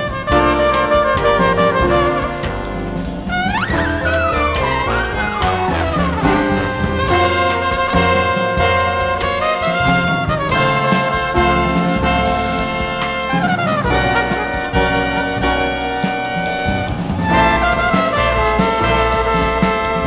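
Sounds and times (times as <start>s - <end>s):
jazz brass ensemble playing: 0.0s - 20.0s
bass line: 3.8s - 8.8s, 11.4s - 20.0s.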